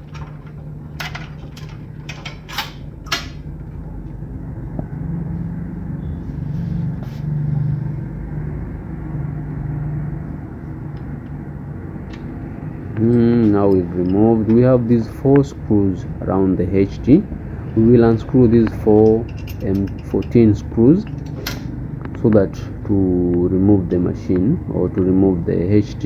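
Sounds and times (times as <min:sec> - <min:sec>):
steady low hum: 0:00.0 - 0:26.0
metallic clicks of hand tools: 0:21.0 - 0:22.2.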